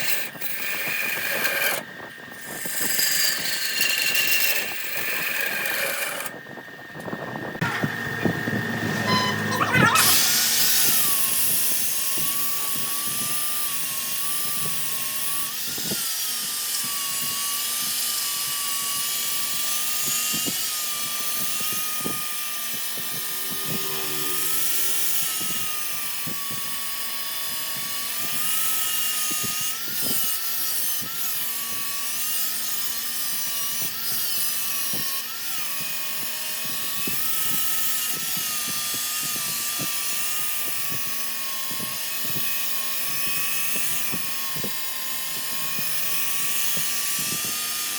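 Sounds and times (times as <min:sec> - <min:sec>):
lathe motor whine: 0:00.0 - 0:30.5
tool scraping spinning wood: 0:00.0 - 0:47.9.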